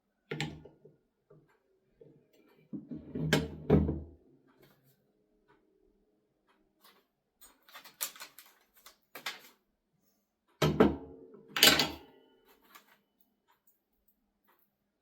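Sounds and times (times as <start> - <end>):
metal parts clinking and rattling: 7.4 - 9.5.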